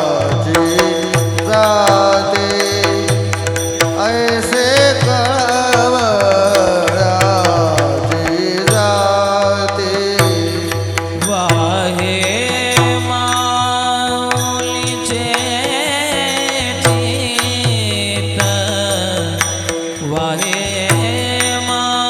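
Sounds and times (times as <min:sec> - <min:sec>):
drum strokes: 0:00.0 - 0:22.0
hand cymbal clashes: 0:00.2 - 0:06.8.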